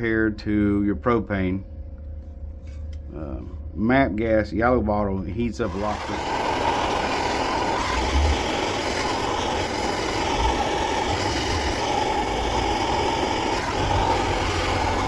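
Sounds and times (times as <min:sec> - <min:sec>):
gas torch roaring: 0:05.6 - 0:15.0.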